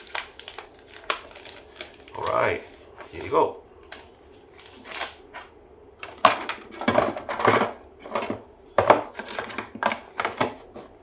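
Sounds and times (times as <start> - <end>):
plastic packaging rustling and crinkling: 0.0 - 11.0.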